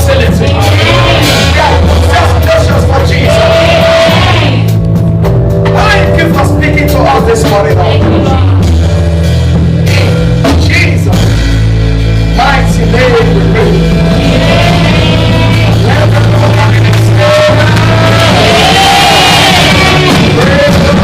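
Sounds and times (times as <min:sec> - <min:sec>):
people singing: 0:00.0 - 0:04.8, 0:14.0 - 0:16.2, 0:17.1 - 0:21.0
drums: 0:00.0 - 0:21.0
heavy bass: 0:00.0 - 0:21.0.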